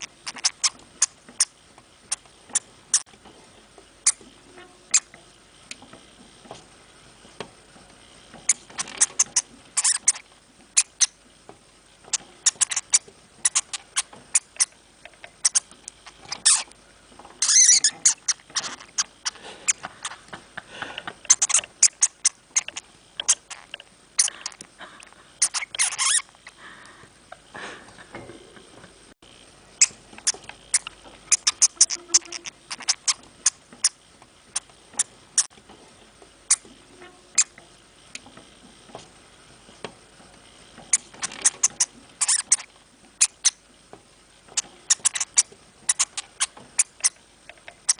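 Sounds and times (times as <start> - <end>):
hamster squeaking and clicking: 0.0 - 3.1, 4.0 - 4.2, 4.9 - 5.9, 8.4 - 11.2, 12.1 - 16.8, 17.4 - 20.3, 21.2 - 24.6, 25.4 - 26.6, 29.8 - 35.6, 36.5 - 36.7, 37.3 - 38.3, 40.8 - 43.6, 44.5 - 47.9.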